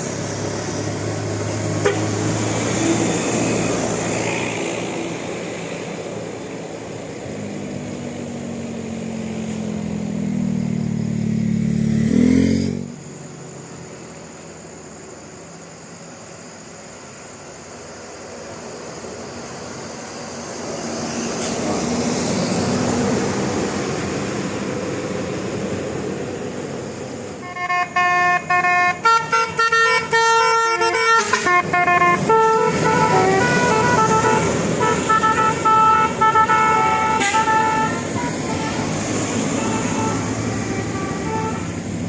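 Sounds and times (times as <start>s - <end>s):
bus engine and road noise: 0.0s - 42.0s
multi-tone bus horn tune: 1.7s - 2.4s, 27.4s - 41.9s.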